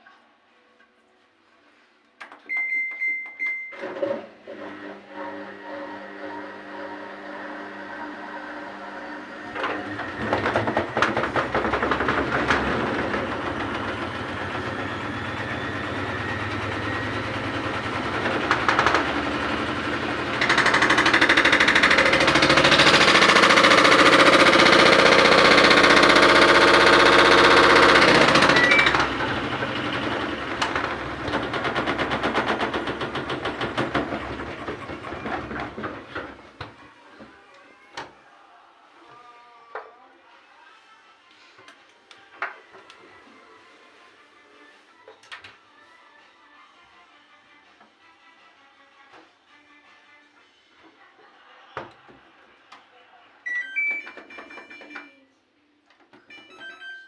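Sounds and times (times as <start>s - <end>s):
washing machine drum churning: 9.5s - 36.7s.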